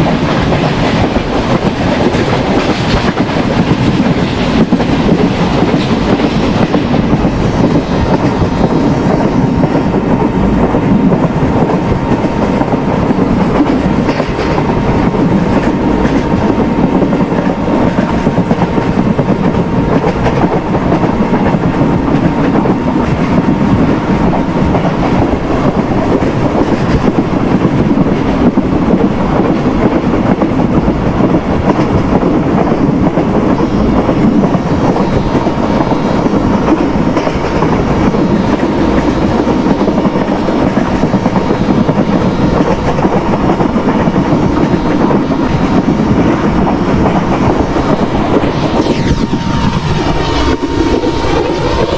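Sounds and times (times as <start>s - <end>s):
clickety-clack of rail joints: 0.0s - 51.9s
train wheels rumbling on rails: 0.0s - 51.9s.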